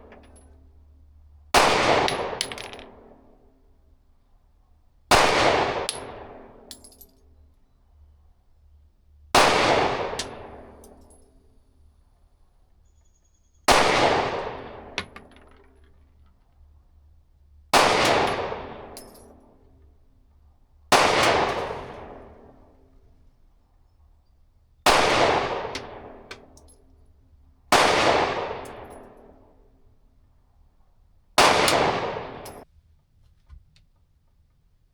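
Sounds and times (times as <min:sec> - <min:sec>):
pistol shots: 0:01.6 - 0:03.0, 0:05.1 - 0:06.6, 0:09.4 - 0:10.9, 0:13.7 - 0:15.5, 0:17.8 - 0:19.2, 0:20.9 - 0:22.6, 0:24.9 - 0:26.6, 0:27.7 - 0:29.2, 0:31.4 - 0:32.6.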